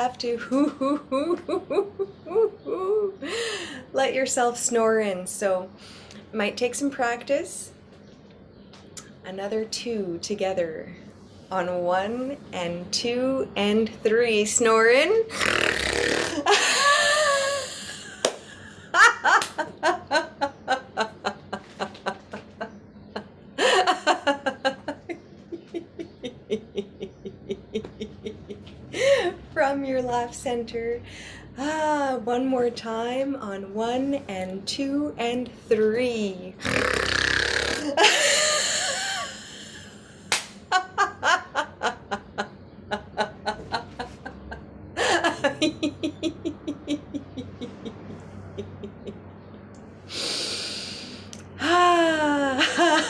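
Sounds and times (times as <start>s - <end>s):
woman laughing breathily: 1.7s - 3.9s, 16.4s - 22.6s, 23.3s - 29.4s, 37.9s - 49.3s
rhythmic forced laughter: 40.8s - 49.4s.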